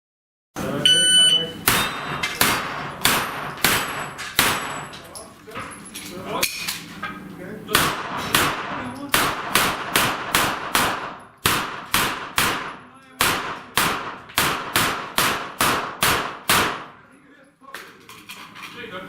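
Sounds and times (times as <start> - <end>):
pistol gunshots: 1.6 - 4.9, 7.7 - 17.0.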